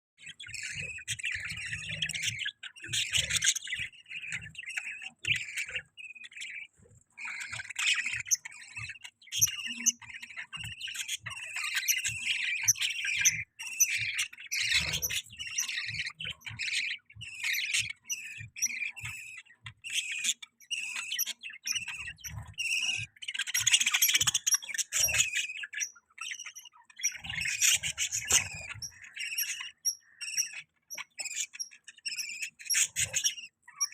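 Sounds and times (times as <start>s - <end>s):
budgies chirping and chattering: 0.2s - 33.9s.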